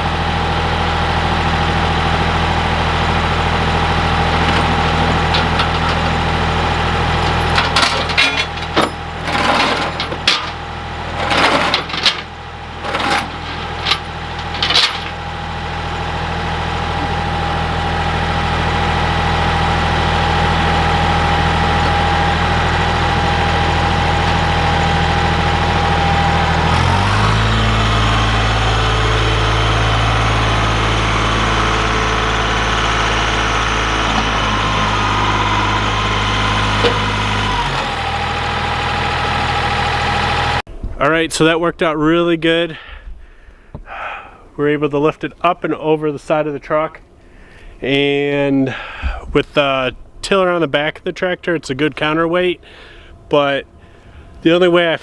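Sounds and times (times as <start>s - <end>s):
tractor diesel engine running: 0.0s - 55.0s
loud knocks and clanks: 7.2s - 15.2s.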